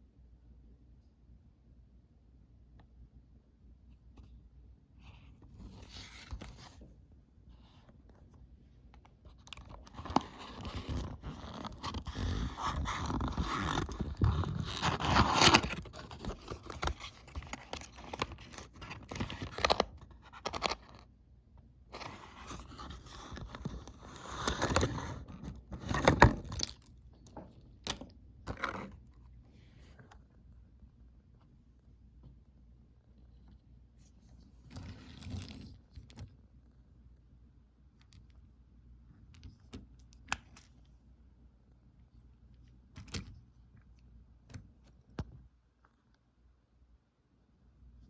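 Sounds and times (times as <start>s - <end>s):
packaging being opened by hand: 9.4s - 21.0s.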